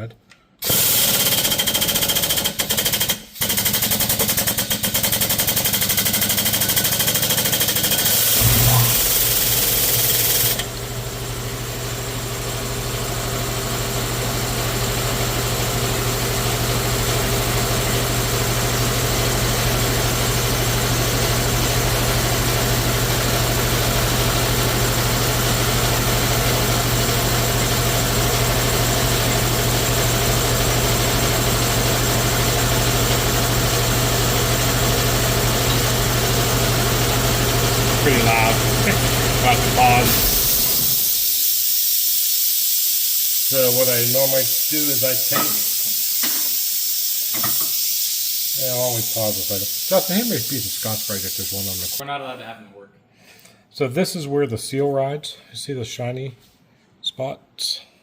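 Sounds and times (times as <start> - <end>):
power tool rattling hiss: 0.6 - 10.8, 25.1 - 52.0
low machine hum: 8.2 - 9.8, 31.9 - 41.2.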